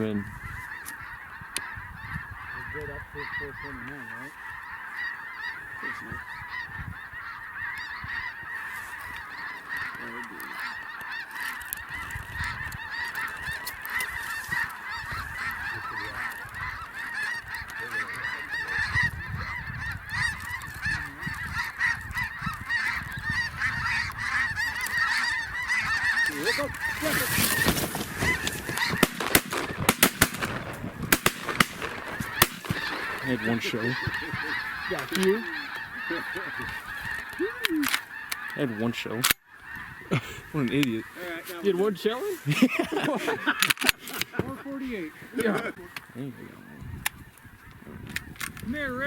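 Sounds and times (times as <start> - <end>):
geese honking: 0.0 - 49.0
sharp cracks: 26.2 - 34.4.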